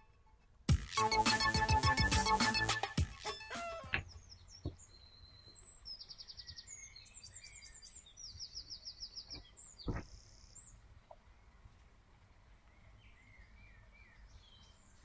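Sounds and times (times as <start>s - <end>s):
songbirds trilling: 3.3s - 15.0s
dull thump: 9.8s - 10.2s.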